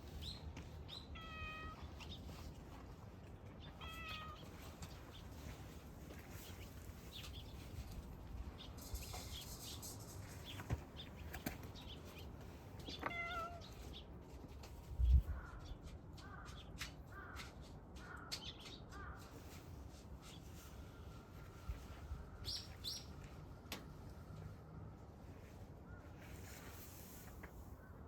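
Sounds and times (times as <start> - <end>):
kittens meowing: 1.2 - 1.9, 3.6 - 4.5, 13.0 - 13.7.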